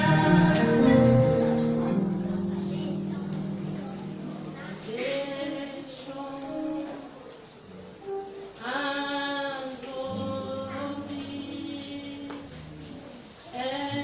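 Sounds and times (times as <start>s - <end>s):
group of voices singing: 0.0s - 1.8s
low accompaniment: 0.0s - 5.8s.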